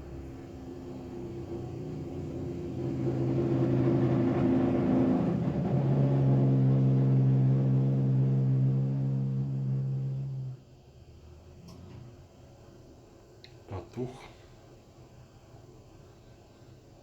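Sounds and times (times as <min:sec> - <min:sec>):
gas boiler droning hum: 0:00.0 - 0:17.0.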